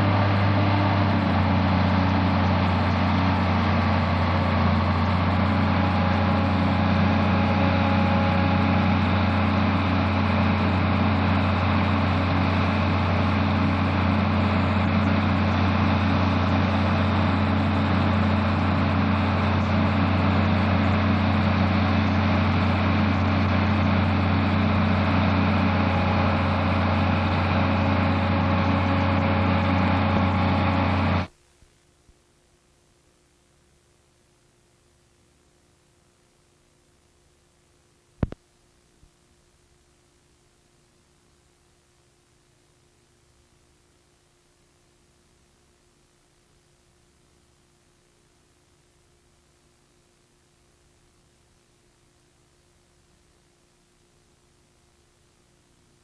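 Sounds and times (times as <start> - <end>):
combine diesel engine running: 0.0 - 31.3.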